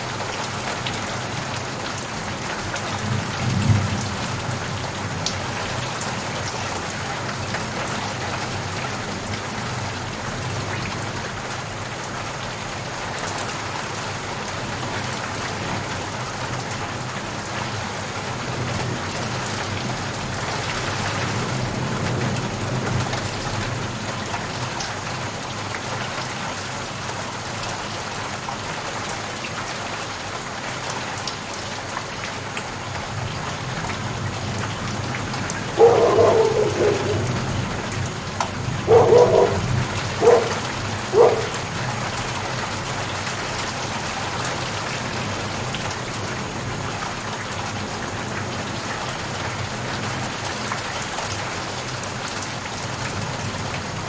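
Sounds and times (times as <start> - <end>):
steady rain falling: 0.0 - 54.0
dog barking: 35.6 - 41.9, 50.4 - 52.2.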